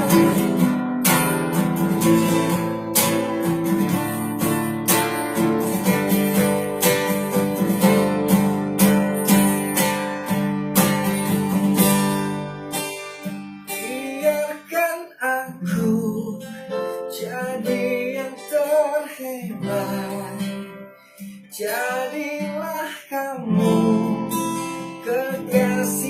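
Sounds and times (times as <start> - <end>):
person singing: 0.0 - 0.8, 13.8 - 26.0
acoustic guitar strumming chords: 0.0 - 26.0.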